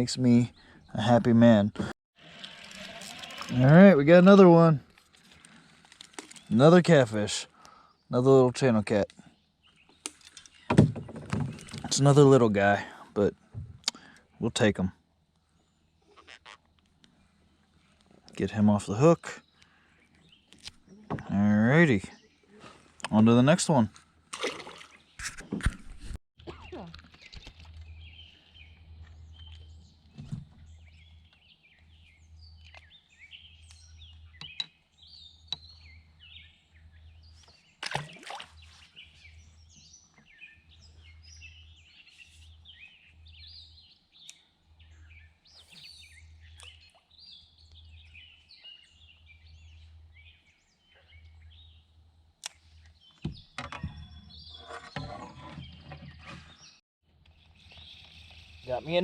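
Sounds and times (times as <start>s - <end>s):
birds chirping and singing: 26.6s - 37.8s, 38.5s - 56.8s, 57.4s - 59.0s.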